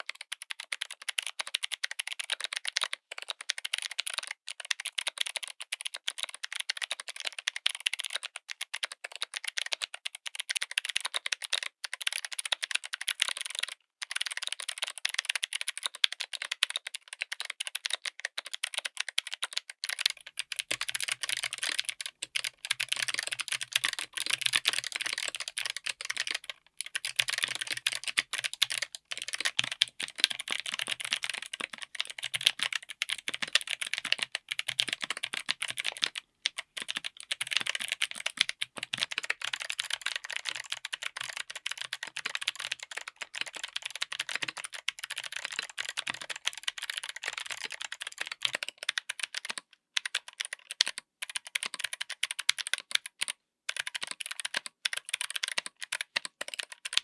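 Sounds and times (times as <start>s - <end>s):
clicky mechanical keyboard typing: 0.1s - 57.0s.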